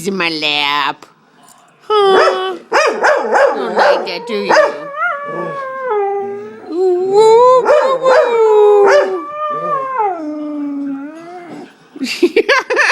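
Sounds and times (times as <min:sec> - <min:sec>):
dog howling: 0:02.0 - 0:11.7
dog yelping: 0:02.1 - 0:05.8.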